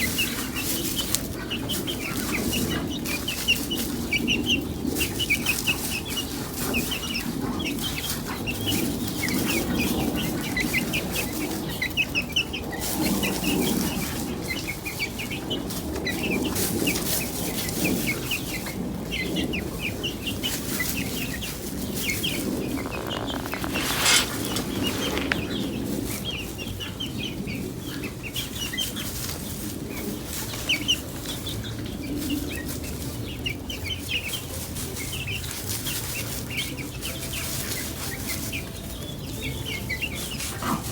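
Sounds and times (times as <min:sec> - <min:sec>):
chickens clucking: 0:00.0 - 0:40.9
rustling burst: 0:22.0 - 0:25.9.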